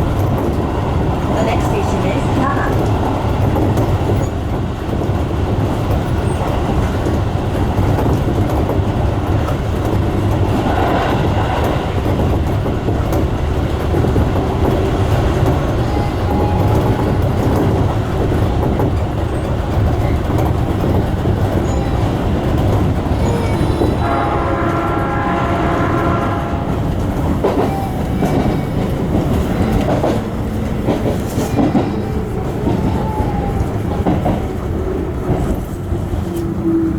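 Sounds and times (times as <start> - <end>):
train wheels rumbling on rails: 0.0 - 36.9.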